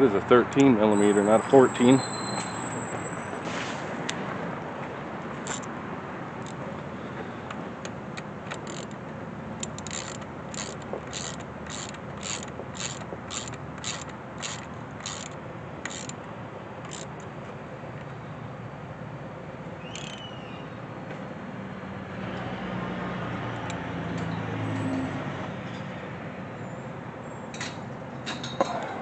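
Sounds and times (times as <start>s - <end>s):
ratchet wrench clicking: 5.4s - 5.7s, 7.8s - 9.0s, 9.6s - 16.2s, 16.8s - 17.3s, 19.9s - 20.2s.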